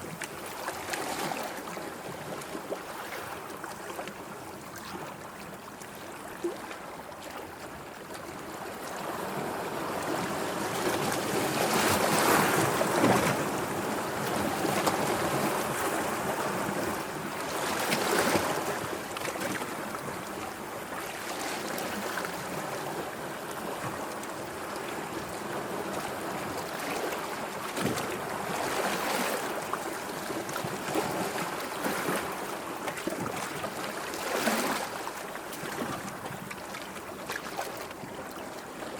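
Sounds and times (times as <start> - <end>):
sea waves breaking: 9.0 - 20.4, 21.0 - 38.9.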